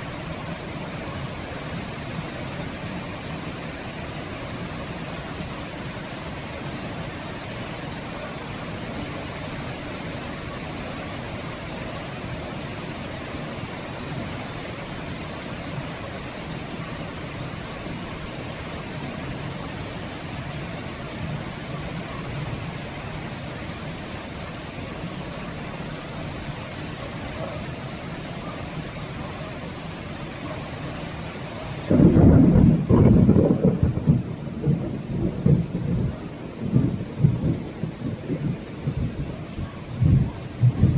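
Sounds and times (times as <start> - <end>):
steady rain: 0.0 - 40.9
thunder clap rumbling: 31.8 - 40.9.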